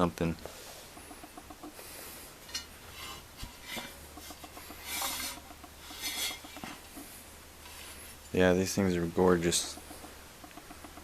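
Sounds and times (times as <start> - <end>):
rubbing and scraping: 2.8 - 8.2.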